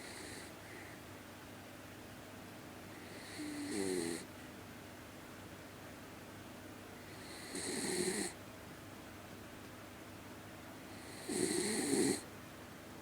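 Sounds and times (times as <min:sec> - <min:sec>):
snoring rasp: 0:03.1 - 0:04.2, 0:07.2 - 0:08.4, 0:11.0 - 0:12.2.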